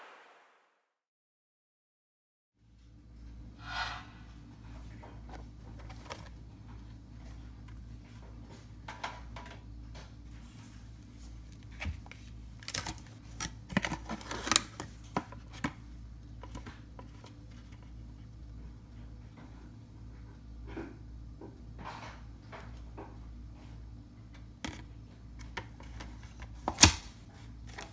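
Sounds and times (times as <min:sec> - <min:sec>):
steady low hum: 0:02.6 - 0:27.9
light clicks and rustles of handling: 0:04.9 - 0:20.4.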